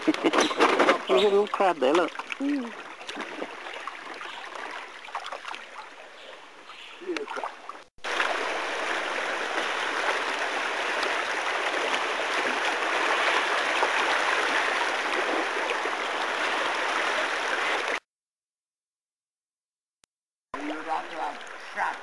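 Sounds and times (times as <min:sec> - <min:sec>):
river water rushing: 0:08.0 - 0:18.0.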